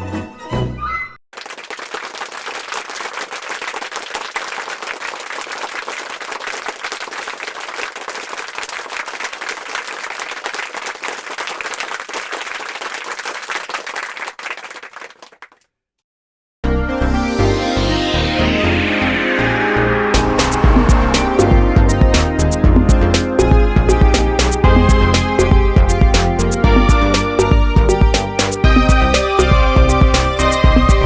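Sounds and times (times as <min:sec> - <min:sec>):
crowd applauding: 0:01.3 - 0:15.6, 0:18.5 - 0:24.7.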